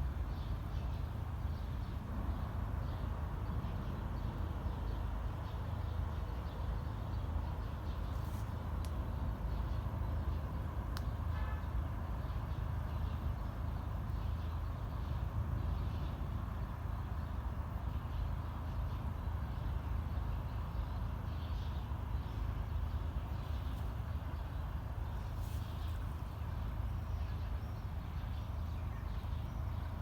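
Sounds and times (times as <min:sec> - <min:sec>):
city traffic rumble: 0:00.0 - 0:30.0.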